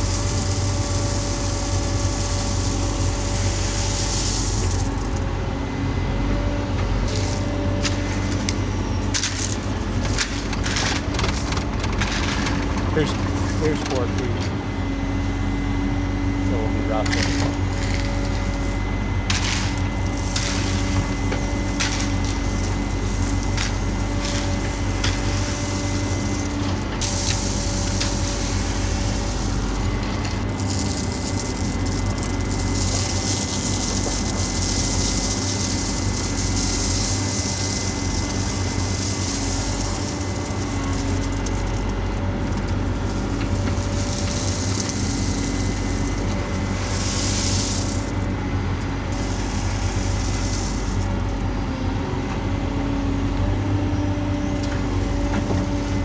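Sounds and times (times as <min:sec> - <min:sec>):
heavy equipment engine running: 0:00.0 - 0:56.0.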